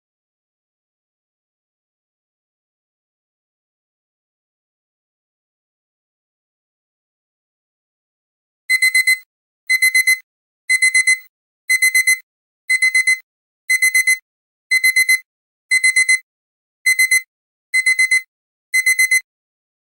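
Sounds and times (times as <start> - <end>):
digital alarm beeps: 8.7 - 16.2, 16.9 - 19.3.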